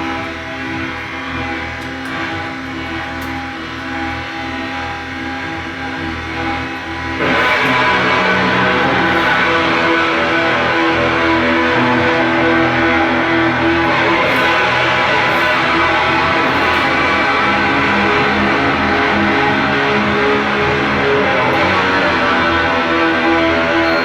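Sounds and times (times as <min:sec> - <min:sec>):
electric guitar: 0:00.0 - 0:24.0
synth drones: 0:00.0 - 0:24.0
crunchy electronic noise: 0:07.2 - 0:24.0.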